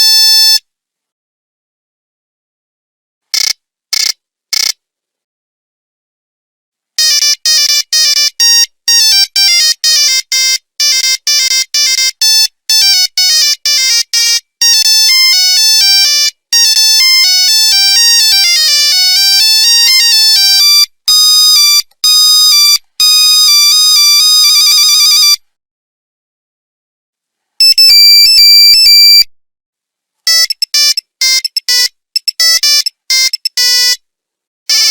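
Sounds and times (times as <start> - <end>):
monophonic ringtone melody: 7.0 - 25.4, 27.6 - 29.2.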